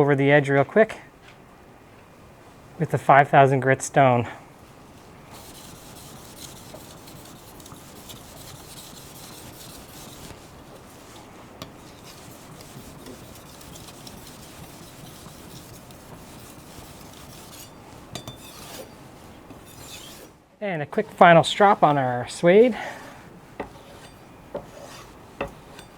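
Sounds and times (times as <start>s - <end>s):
knife scraping on whetstone: 5.0s - 20.4s, 21.1s - 25.9s.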